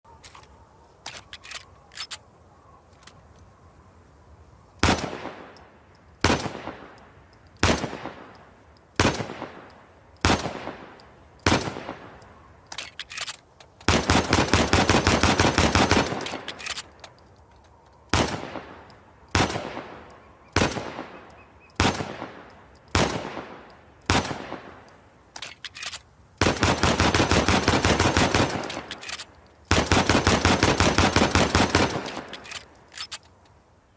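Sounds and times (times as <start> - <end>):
light metallic clicks: 0.2 - 3.5, 5.5 - 9.0, 9.6 - 13.9, 16.0 - 20.6, 21.2 - 26.4, 28.5 - 29.8, 31.7 - 33.7
rapid string of gunshots: 13.9 - 16.6, 26.4 - 29.1, 29.7 - 32.5.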